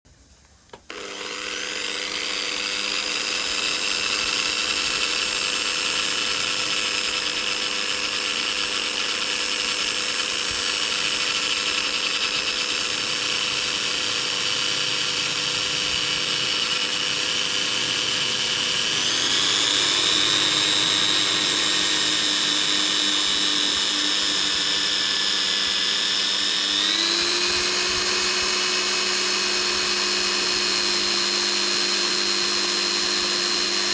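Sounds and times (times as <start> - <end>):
electric drill motor whine: 0.7 - 33.9.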